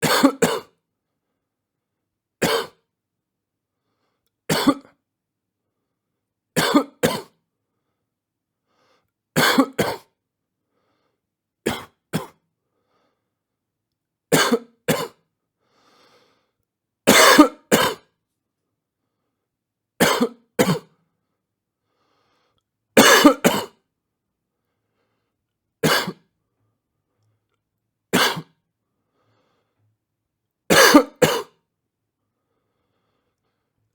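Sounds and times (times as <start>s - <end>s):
man coughing: 0.0s - 0.7s, 4.5s - 4.9s, 6.6s - 7.3s, 9.4s - 10.1s, 14.4s - 15.2s, 17.1s - 18.1s, 20.0s - 20.9s, 23.0s - 23.8s, 25.8s - 26.2s, 28.2s - 28.5s, 30.7s - 31.6s.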